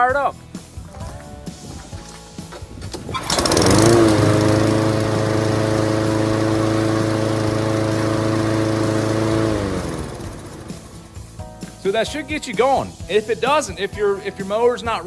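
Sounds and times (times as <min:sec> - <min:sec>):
mower engine starting and running: 0:01.5 - 0:13.1.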